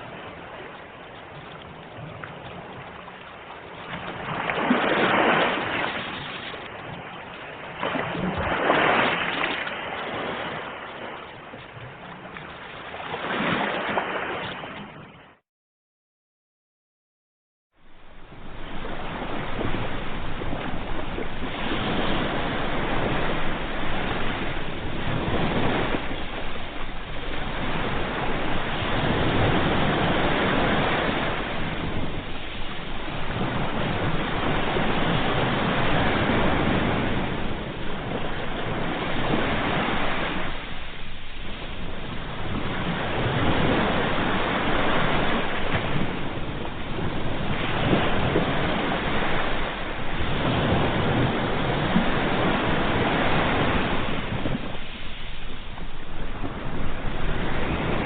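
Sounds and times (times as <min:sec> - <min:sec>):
sea waves breaking on shore: 0:00.0 - 0:15.4, 0:17.8 - 0:58.0.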